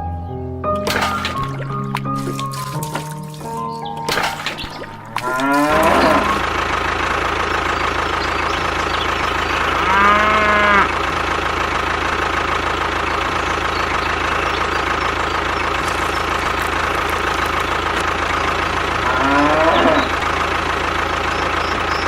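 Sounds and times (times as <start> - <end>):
moo-like call: 5.2 - 6.4, 9.7 - 11.0, 19.0 - 20.2.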